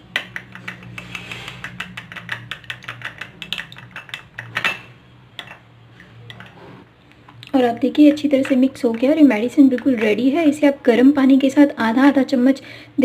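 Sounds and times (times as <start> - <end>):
spoon clicking against dish: 0.2 - 4.8.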